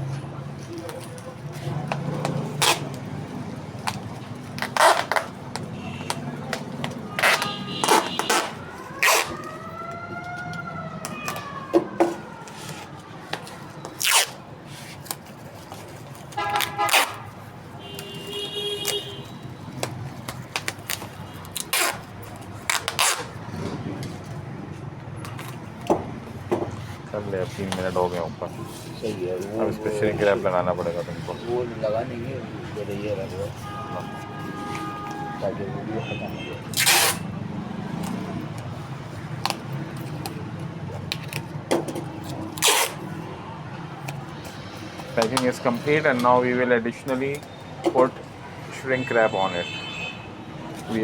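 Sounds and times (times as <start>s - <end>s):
street traffic hum: 0.0s - 51.0s
vehicle horn: 7.1s - 8.6s, 16.4s - 19.4s, 33.6s - 37.0s, 49.0s - 50.3s
packaging clicks and crinkles: 18.8s - 23.4s.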